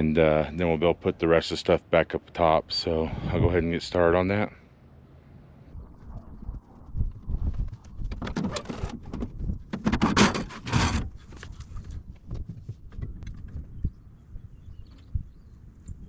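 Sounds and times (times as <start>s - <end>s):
scraping and rustling: 7.7s - 13.0s.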